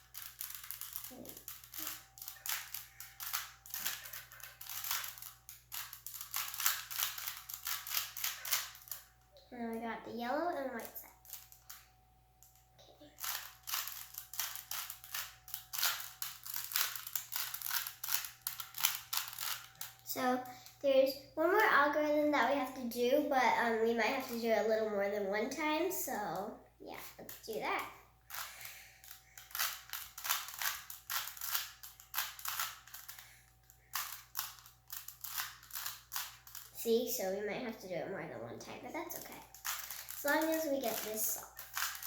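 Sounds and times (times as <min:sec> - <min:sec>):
puzzle cube clicking as turned: 0:00.1 - 0:09.0, 0:13.2 - 0:19.9, 0:28.3 - 0:33.2, 0:33.9 - 0:36.7, 0:39.5 - 0:42.0.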